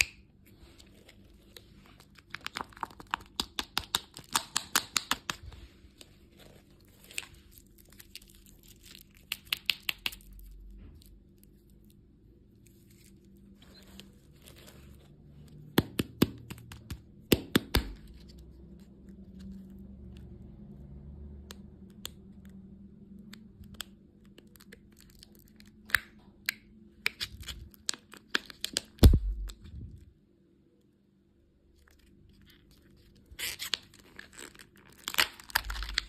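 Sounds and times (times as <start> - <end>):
packaging crinkling and tearing: 0.6 - 12.0, 23.6 - 26.0, 27.0 - 29.8, 31.8 - 36.0.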